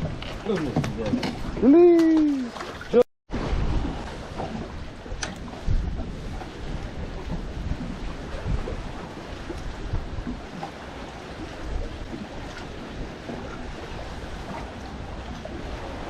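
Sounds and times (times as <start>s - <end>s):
wind buffeting microphone: 3.3s - 16.0s.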